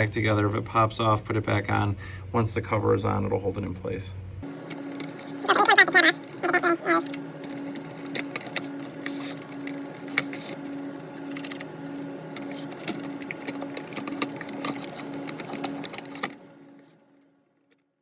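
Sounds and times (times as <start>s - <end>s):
pulsing mechanical hum: 4.1s - 17.8s.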